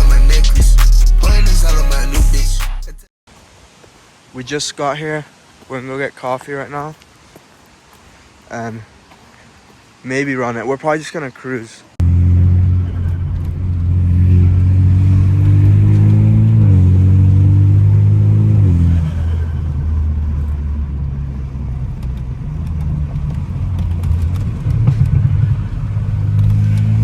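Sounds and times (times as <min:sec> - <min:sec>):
car engine accelerating: 0:12.0 - 0:27.0.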